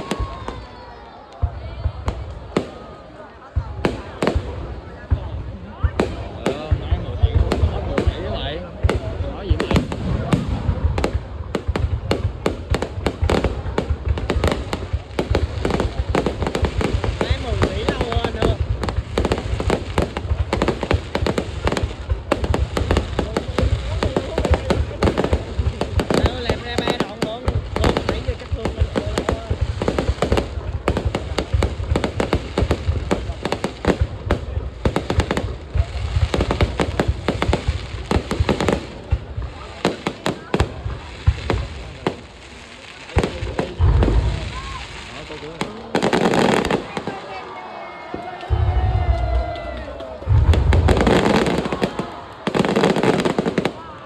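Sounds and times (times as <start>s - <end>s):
fireworks bangs: 0.0s - 54.0s
low rumble of booms: 43.8s - 44.7s, 50.3s - 51.3s.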